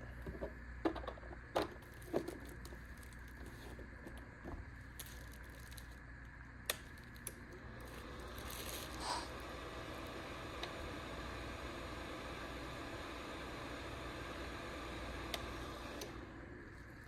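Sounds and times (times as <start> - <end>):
space heater fan hissing: 6.0 - 17.0.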